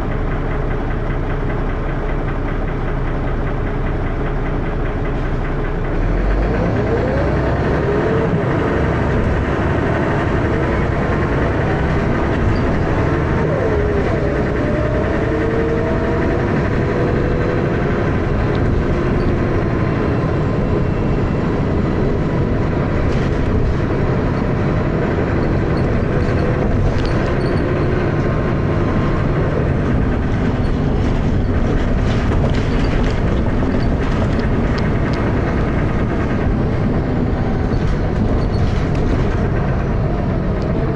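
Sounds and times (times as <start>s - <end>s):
bus diesel engine knocking: 0.0s - 40.9s
engine whine: 0.0s - 40.9s
faint rattles: 22.4s - 40.0s.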